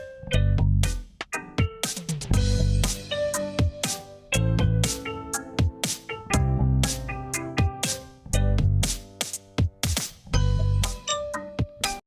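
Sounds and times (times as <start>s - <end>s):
electronic music: 0.0s - 12.0s
heavy bass hit: 2.3s - 5.0s, 8.3s - 9.0s.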